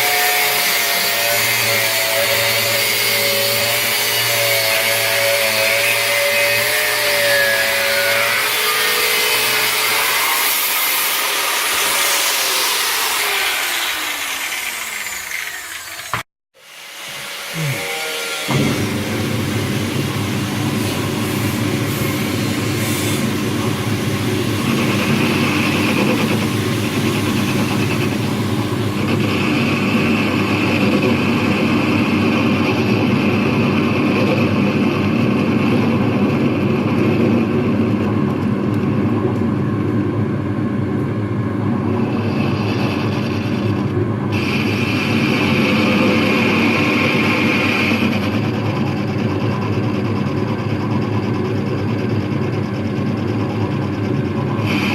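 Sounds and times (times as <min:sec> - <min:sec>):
high motor whine: 0:11.6 - 0:54.9.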